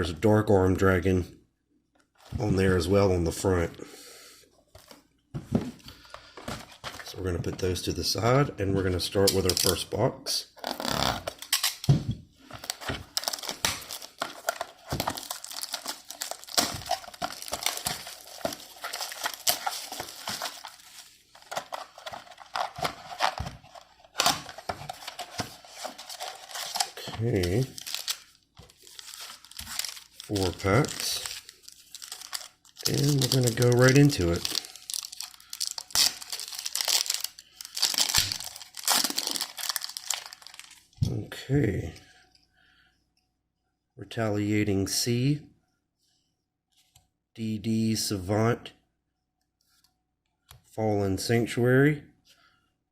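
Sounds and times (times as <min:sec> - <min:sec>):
cardboard rustling: 0:04.8 - 0:07.2, 0:11.2 - 0:40.9
plastic wrapping crinkling: 0:10.8 - 0:41.0.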